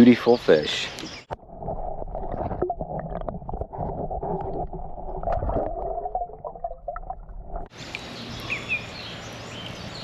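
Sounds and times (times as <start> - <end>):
muffled water gurgling and sloshing: 1.2 - 7.8.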